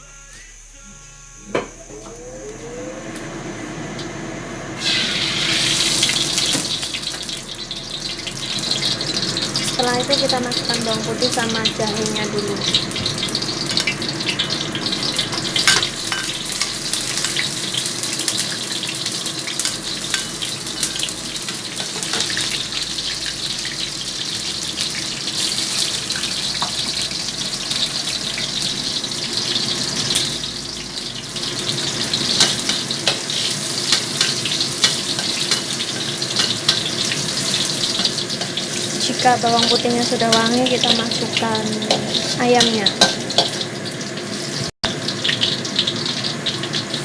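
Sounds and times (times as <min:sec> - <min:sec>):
garlic and ginger sizzling in oil: 0:01.6 - 0:47.0.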